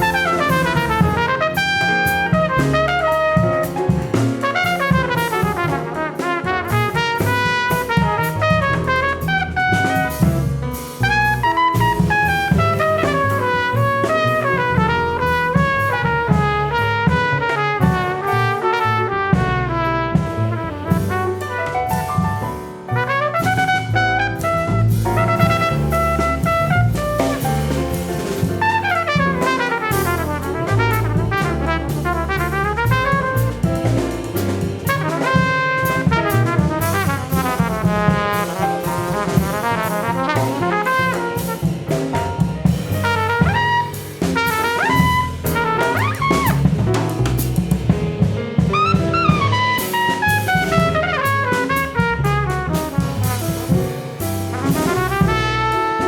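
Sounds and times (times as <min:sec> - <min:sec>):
trumpet: 0:00.0 - 0:34.1, 0:34.8 - 0:46.8, 0:48.7 - 0:56.0
bass: 0:00.0 - 0:56.0
drum kit: 0:00.0 - 0:56.0
piano: 0:00.0 - 0:56.0.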